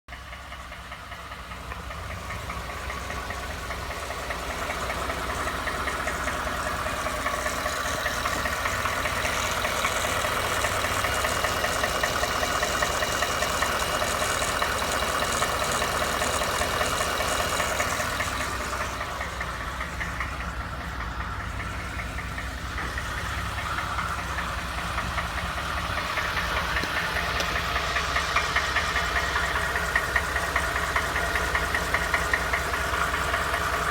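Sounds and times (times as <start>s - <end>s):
engine running with knock: 0.1s - 33.9s.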